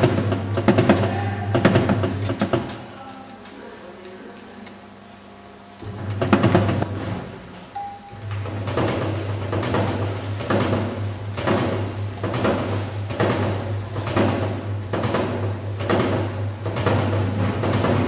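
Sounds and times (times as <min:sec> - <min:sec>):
washing machine running: 0:00.0 - 0:18.0.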